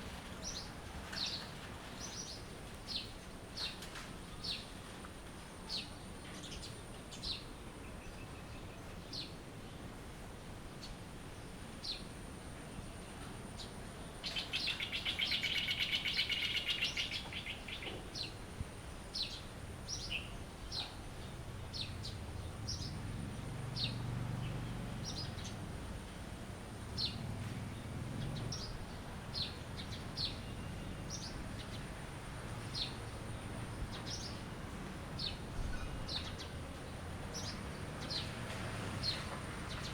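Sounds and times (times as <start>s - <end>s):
songbirds chirping: 0.0s - 39.9s
rapid bird trilling song: 14.2s - 18.4s.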